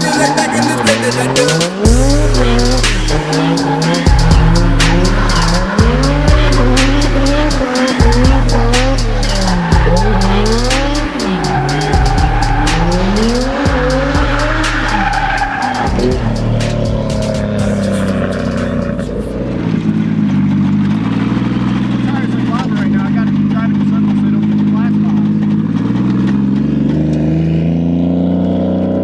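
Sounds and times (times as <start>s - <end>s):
music with heavy bass and beat: 0.0s - 19.8s
tyres squealing: 0.0s - 26.6s
car engine revving: 0.0s - 29.0s.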